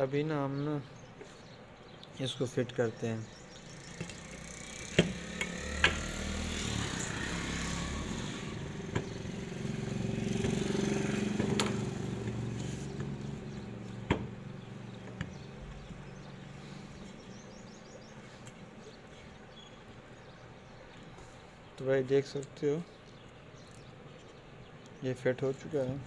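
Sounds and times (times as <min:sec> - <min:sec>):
motor parts clicking and knocking: 0:03.8 - 0:06.3, 0:11.3 - 0:14.4
passing vehicle engine hum: 0:03.8 - 0:18.2.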